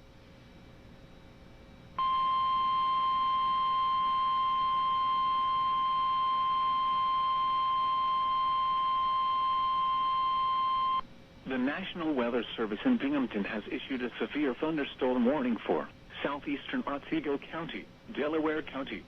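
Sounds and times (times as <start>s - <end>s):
loud steady alarm tone: 2.0s - 11.0s.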